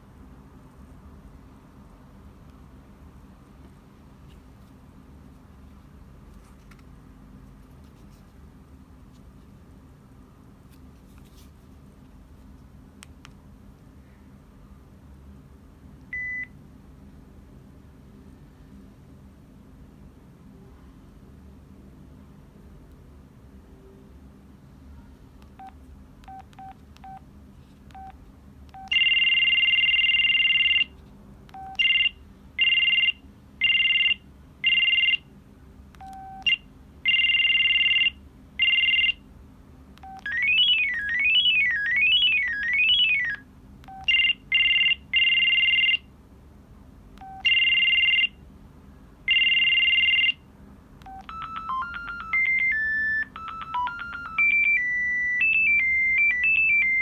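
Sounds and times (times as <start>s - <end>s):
key beeps: 16.2s - 16.5s, 25.6s - 27.2s, 27.9s - 29.2s, 36.0s - 36.6s, 40.0s - 46.0s, 47.2s - 48.3s, 51.0s - 57.0s
cell phone ring tones: 28.8s - 31.0s, 31.6s - 35.2s, 36.0s - 39.2s, 40.0s - 46.0s, 47.2s - 48.4s, 49.3s - 50.4s, 51.0s - 57.0s
simple electronic melody: 40.2s - 43.4s, 51.1s - 57.0s.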